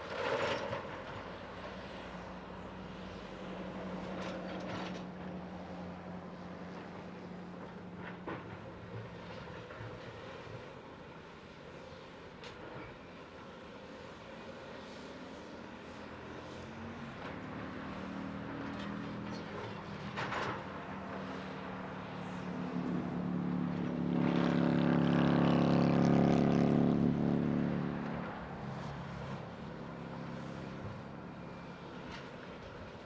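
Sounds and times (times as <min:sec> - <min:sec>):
diesel engine running and revving: 0:16.4 - 0:33.0.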